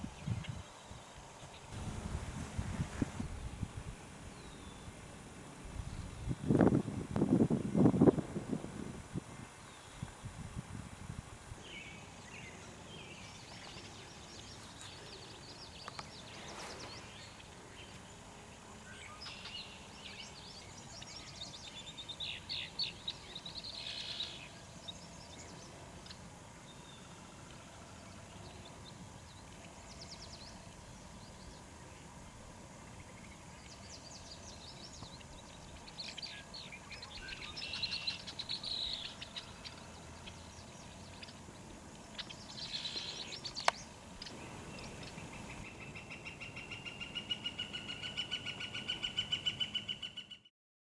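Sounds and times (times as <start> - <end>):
songbirds singing and calling: 11.6 - 50.5
rapid trilling birdsong: 11.7 - 50.5.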